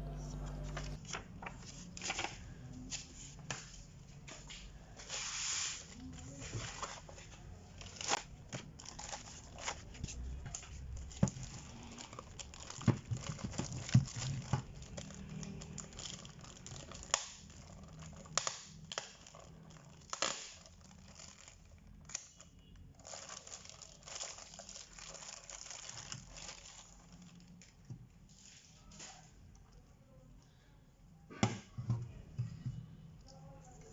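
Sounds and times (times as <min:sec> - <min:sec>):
packaging crinkling and rustling: 0:06.0 - 0:29.3.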